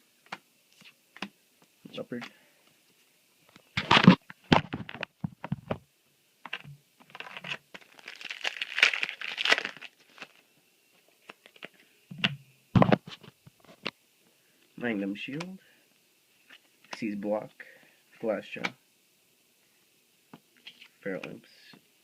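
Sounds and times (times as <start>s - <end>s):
foil wrapper crinkling and tearing: 6.5s - 10.4s.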